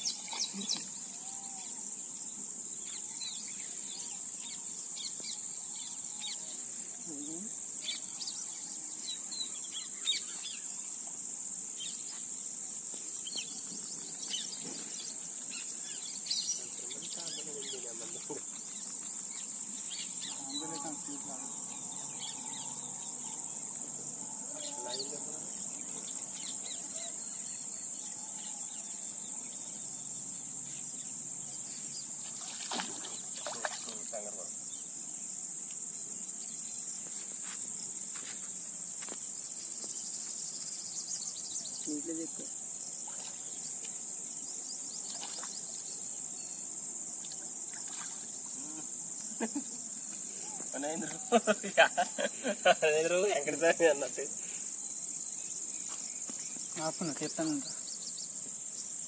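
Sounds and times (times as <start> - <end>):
crickets trilling: 0.0 - 59.0.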